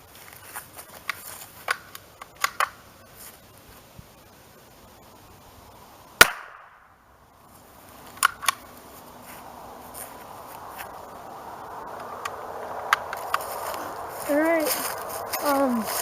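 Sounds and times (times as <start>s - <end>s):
distant rifle shot: 6.2s - 6.9s.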